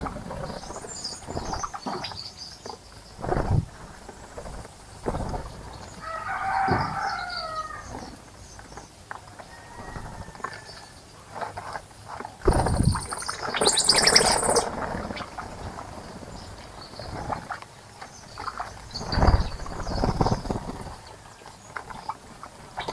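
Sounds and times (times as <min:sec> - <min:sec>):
rooster crowing: 0:06.0 - 0:07.9, 0:09.5 - 0:11.0
birds calling: 0:12.4 - 0:17.3
rapid high bird chattering: 0:12.5 - 0:14.7.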